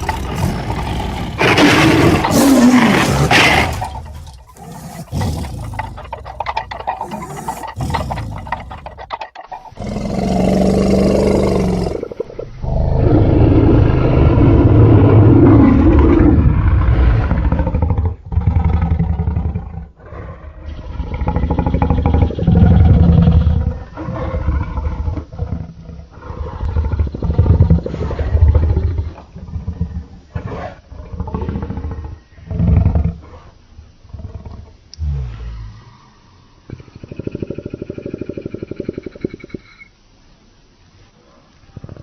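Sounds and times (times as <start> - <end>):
deep creature roars and growls: 0.0 - 9.2, 9.8 - 29.0.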